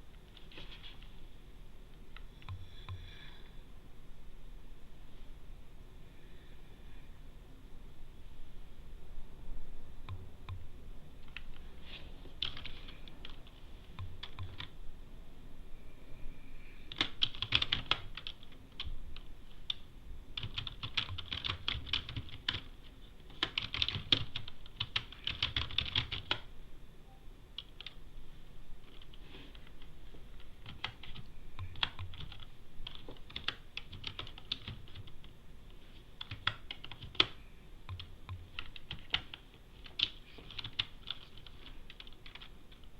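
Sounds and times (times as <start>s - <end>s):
computer keyboard typing: 11.2s - 11.7s, 12.4s - 14.8s, 16.9s - 19.8s, 20.4s - 26.5s, 27.6s - 28.0s, 28.8s - 35.3s, 36.2s - 42.9s.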